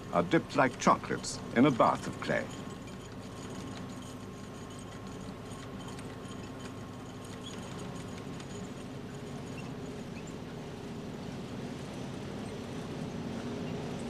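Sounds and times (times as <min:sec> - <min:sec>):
workshop hum and hiss: 0:00.0 - 0:14.0.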